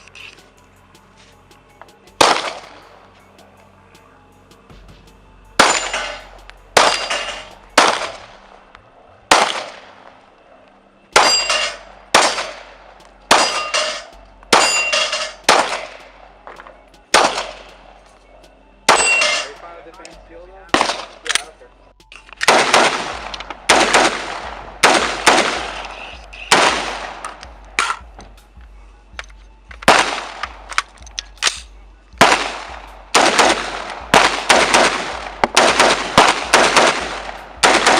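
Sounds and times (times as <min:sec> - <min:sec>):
handgun shots echoing: 0:02.2 - 0:02.9, 0:05.6 - 0:08.4, 0:09.3 - 0:10.0, 0:11.2 - 0:17.8, 0:18.9 - 0:19.6, 0:20.7 - 0:21.6, 0:22.3 - 0:28.0, 0:29.8 - 0:37.9
metallic ring: 0:05.6 - 0:07.7, 0:11.2 - 0:11.9, 0:13.4 - 0:15.5, 0:19.0 - 0:19.6.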